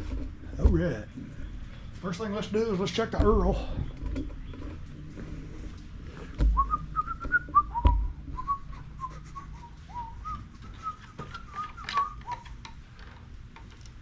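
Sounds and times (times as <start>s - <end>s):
dull knocks: 0.0s - 1.0s
man whistling: 6.6s - 12.5s.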